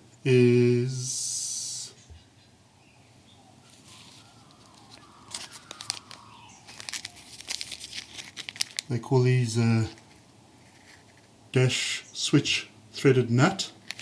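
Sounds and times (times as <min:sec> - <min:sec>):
light clicks and crinkles: 0:03.6 - 0:09.0, 0:09.9 - 0:11.4, 0:13.8 - 0:14.0.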